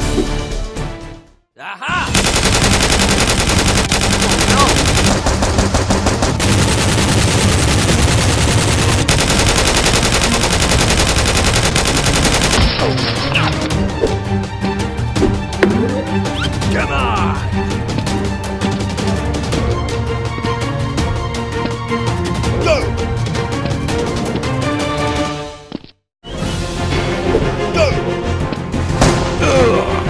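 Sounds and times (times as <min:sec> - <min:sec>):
rapid automatic gunfire: 0:02.1 - 0:13.3.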